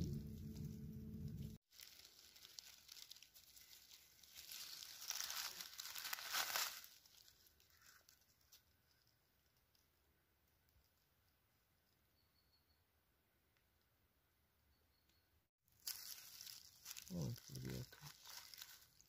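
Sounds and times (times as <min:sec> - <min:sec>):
low microphone rumble: 0:00.0 - 0:01.6
dry leaf litter rustling: 0:01.3 - 0:08.6, 0:15.7 - 0:19.0.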